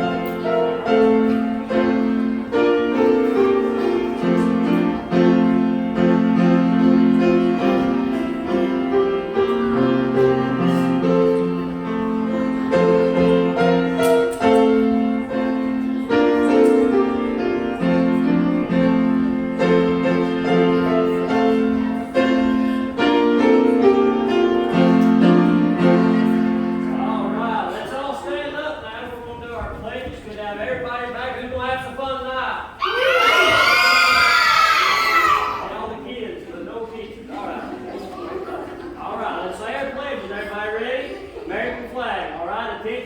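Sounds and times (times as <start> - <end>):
slow piano chords: 0.0 - 28.0.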